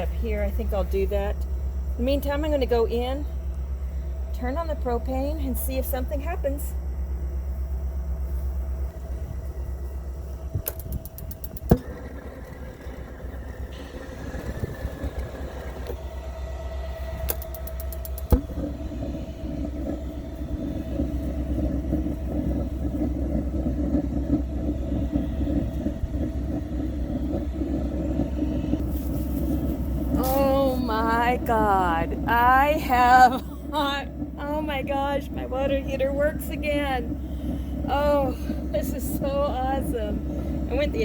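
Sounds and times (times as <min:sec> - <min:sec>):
burner low rumble: 0:00.0 - 0:41.0
spark igniter clicking: 0:10.6 - 0:12.1, 0:17.2 - 0:18.8.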